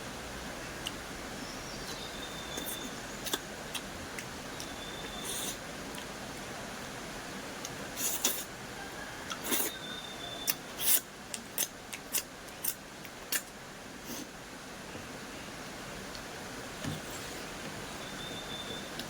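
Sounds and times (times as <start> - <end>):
steady background hiss: 0.0 - 19.0
crunchy chewing: 1.9 - 6.1, 10.4 - 13.5.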